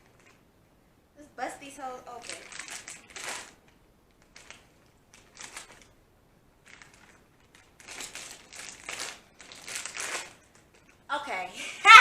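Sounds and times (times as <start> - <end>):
plastic chip bag crinkling: 0.0 - 0.4, 2.1 - 6.0, 6.6 - 11.1.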